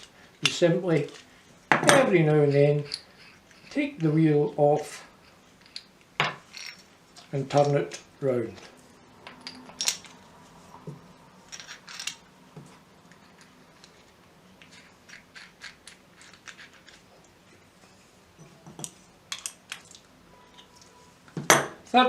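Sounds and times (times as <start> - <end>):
metal tools clinking: 5.6 - 8.0, 8.6 - 10.2, 11.5 - 12.3.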